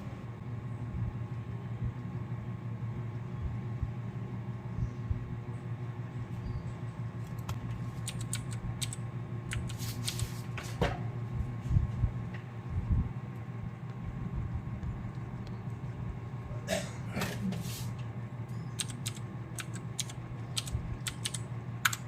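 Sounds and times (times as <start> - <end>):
steady low hum: 0.0 - 22.0
mouse and keyboard clicking: 7.4 - 10.3, 18.8 - 22.0.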